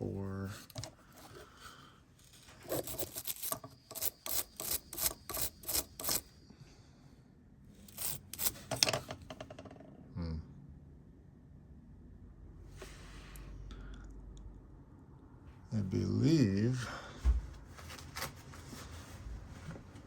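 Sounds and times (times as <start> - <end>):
short rubbing strokes: 2.2 - 6.3, 7.8 - 8.8.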